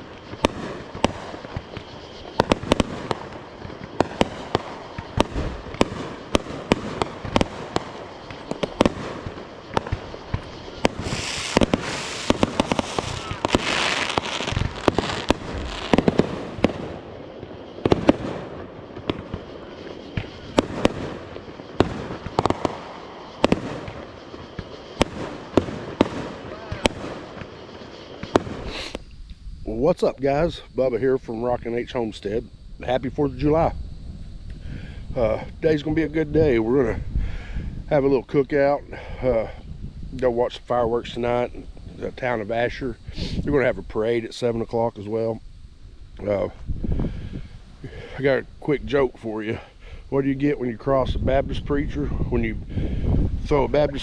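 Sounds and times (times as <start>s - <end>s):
fireworks bangs and pops: 0.0s - 29.1s
fireworks hissing crackle: 0.0s - 54.0s.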